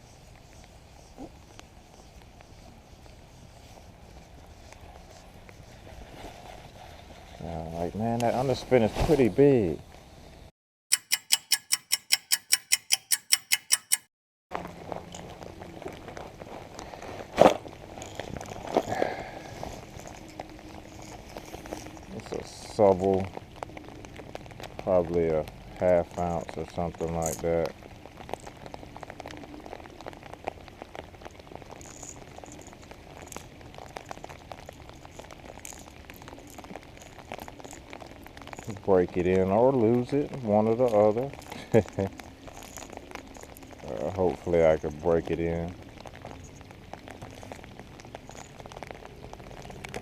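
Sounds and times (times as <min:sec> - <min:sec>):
clock ticking: 0:10.9 - 0:14.1
rain falling: 0:14.6 - 0:50.0
raindrops ticking close: 0:17.6 - 0:50.0.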